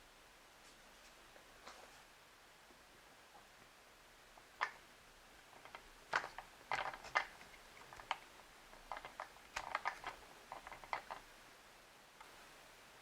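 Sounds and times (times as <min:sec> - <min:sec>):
plastic toy pieces clicking: 0:05.6 - 0:08.2, 0:08.8 - 0:11.2.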